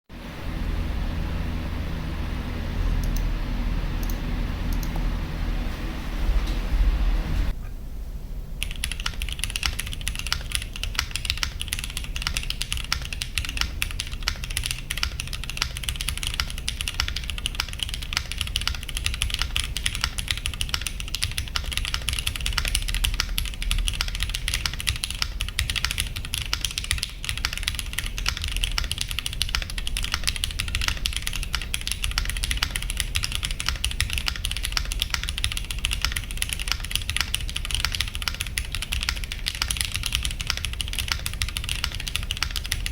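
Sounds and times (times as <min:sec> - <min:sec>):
mechanical keyboard typing: 0:08.6 - 0:42.9.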